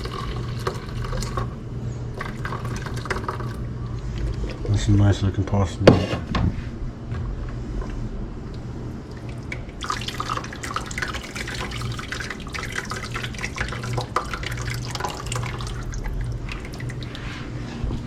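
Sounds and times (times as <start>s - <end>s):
low steady hum: 0.0s - 18.0s
broth dripping and splashing: 9.0s - 17.2s.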